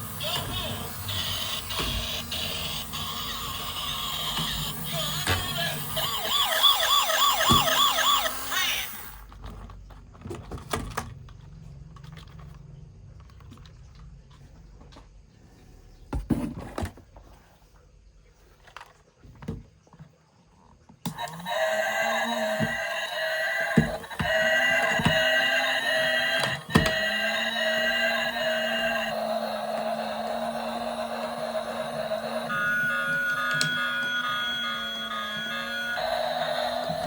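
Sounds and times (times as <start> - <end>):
toy siren yelping: 0.0 - 9.2, 21.1 - 37.0
loud pitched sound: 4.8 - 9.1.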